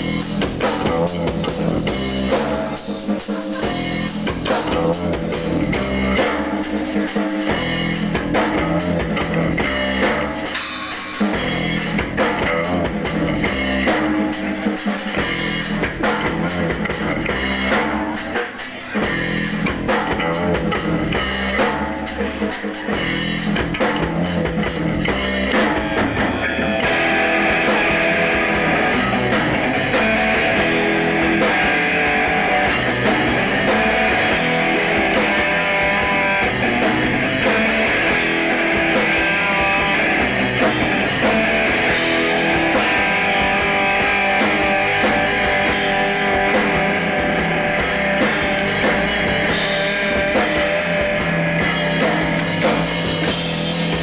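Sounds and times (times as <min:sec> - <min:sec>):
live rock band playing: 0:00.0 - 0:54.0
strummed guitar ringing: 0:26.4 - 0:51.1.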